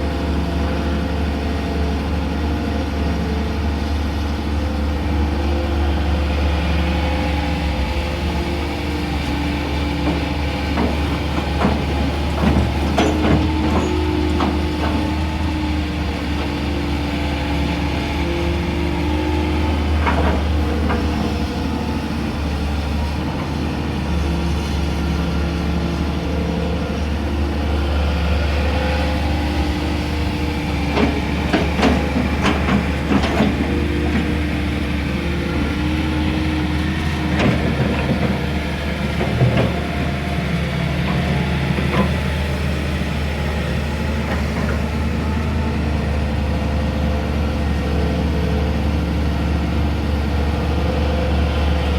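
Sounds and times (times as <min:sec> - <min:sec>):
excavator diesel engine droning: 0:00.0 - 0:51.9.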